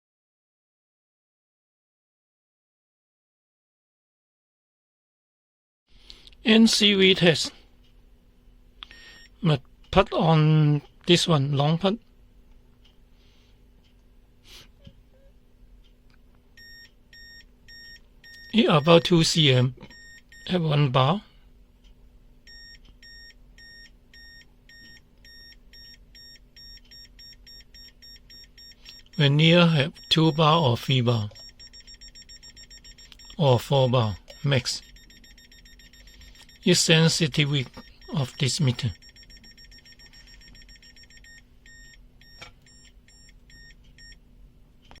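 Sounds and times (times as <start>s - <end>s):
voltage detector beeping: 16.6s - 19.3s, 19.9s - 20.6s, 22.5s - 44.2s.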